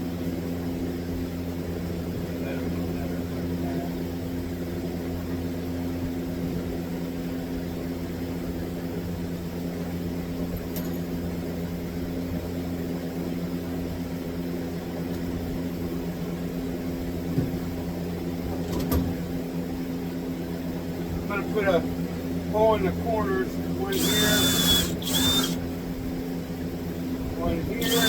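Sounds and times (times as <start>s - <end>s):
steady low hum: 19.4s - 28.0s.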